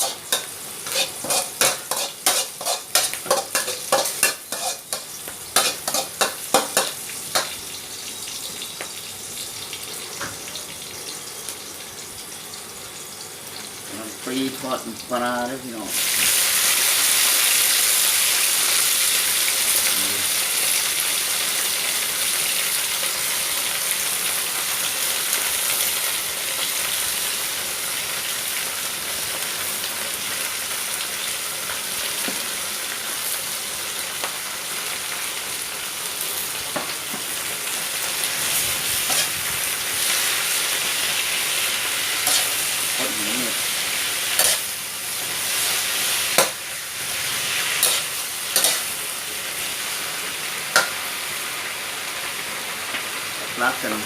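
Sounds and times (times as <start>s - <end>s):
cabbage sizzling in oil: 0.0s - 54.0s.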